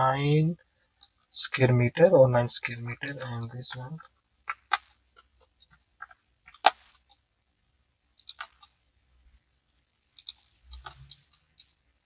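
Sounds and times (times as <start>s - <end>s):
computer mouse and keyboard clicks: 3.2s - 7.3s, 8.2s - 8.9s, 10.1s - 12.0s.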